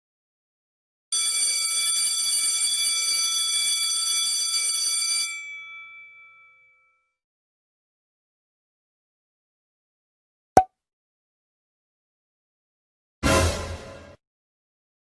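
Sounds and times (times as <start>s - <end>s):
electric alarm bell ringing: 1.1s - 6.9s.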